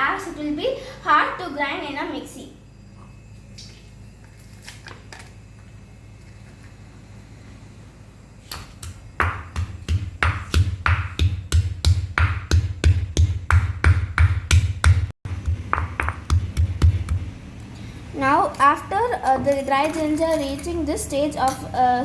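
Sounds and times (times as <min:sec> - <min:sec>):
ginger being pounded: 0:08.5 - 0:17.4.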